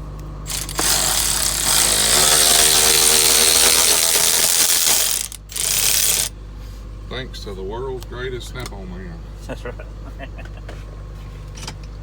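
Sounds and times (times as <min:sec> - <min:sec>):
power tool whining: 0:00.5 - 0:06.3.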